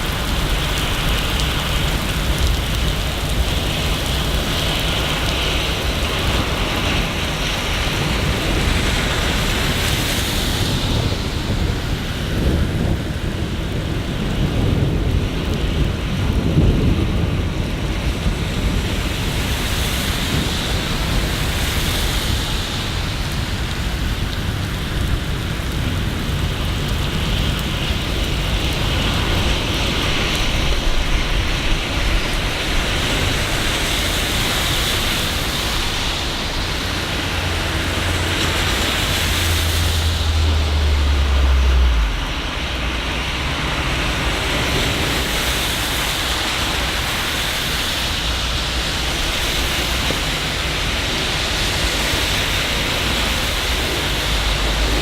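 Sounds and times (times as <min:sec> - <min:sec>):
rainfall hiss: 0:00.0 - 0:55.0
low rumble: 0:35.6 - 0:45.1.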